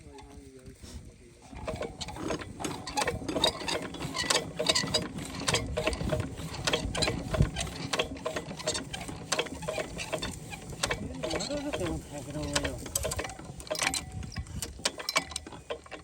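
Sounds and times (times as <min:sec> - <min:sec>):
metallic mechanism clicking: 0:09.4 - 0:16.0.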